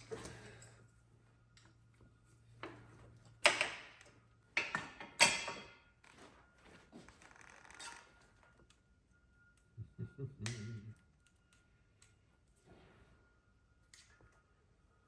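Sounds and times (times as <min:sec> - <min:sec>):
metal tools clanking: 0:04.6 - 0:05.8.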